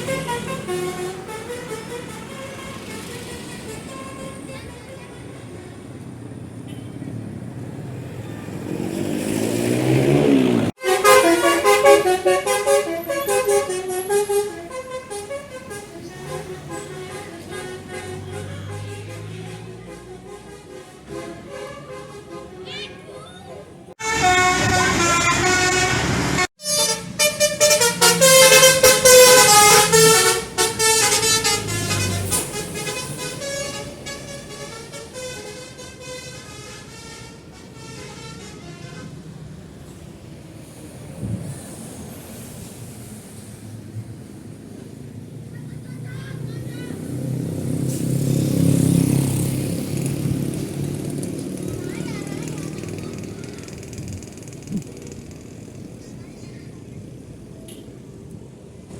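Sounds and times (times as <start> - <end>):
multi-note air horn melody: 0.0 - 4.5, 10.8 - 23.0, 24.0 - 39.2
bus engine and road noise: 0.0 - 58.9.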